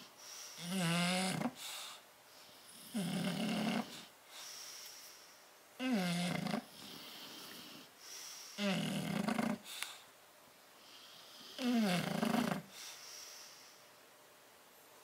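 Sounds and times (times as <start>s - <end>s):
dog snoring: 0.0s - 4.6s, 5.8s - 10.0s, 10.8s - 13.0s
soft hissing breaths: 0.0s - 15.0s.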